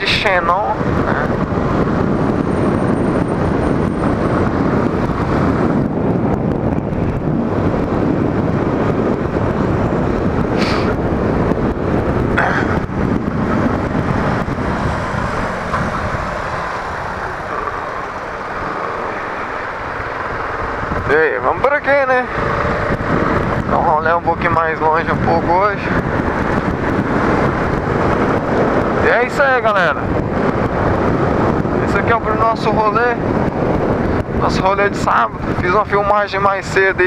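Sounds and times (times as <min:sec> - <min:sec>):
wind and road noise: 0:00.0 - 0:37.0
motorcycle engine running: 0:00.8 - 0:29.0.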